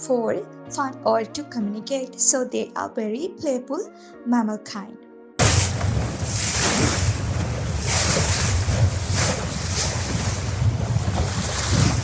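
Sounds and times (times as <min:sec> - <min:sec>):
water rushing and splashing: 0:05.4 - 0:12.0
wind buffeting microphone: 0:05.4 - 0:12.0.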